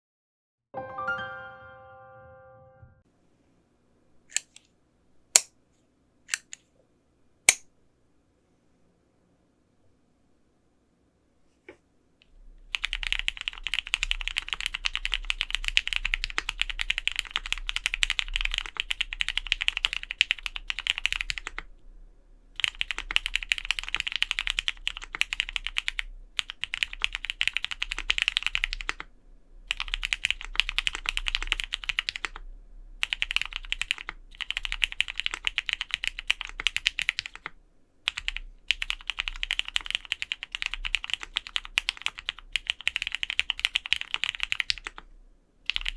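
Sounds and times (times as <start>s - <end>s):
fast mechanical keyboard typing: 12.7s - 21.7s, 22.6s - 29.1s, 29.7s - 32.4s, 33.0s - 45.0s, 45.7s - 45.9s.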